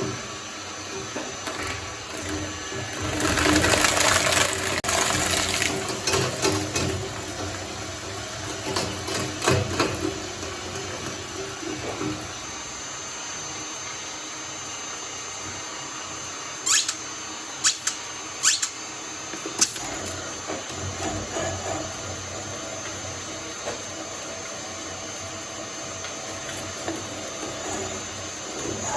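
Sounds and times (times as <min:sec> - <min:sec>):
shredder hum: 0:00.0 - 0:14.5, 0:16.3 - 0:28.9
shredder crunching: 0:01.6 - 0:07.5.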